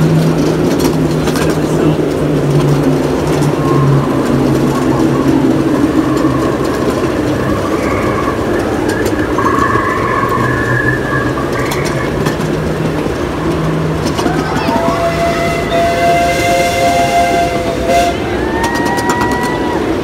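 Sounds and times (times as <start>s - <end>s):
miniature train rumbling: 0.0s - 20.0s
wavering higher tone: 7.4s - 12.2s.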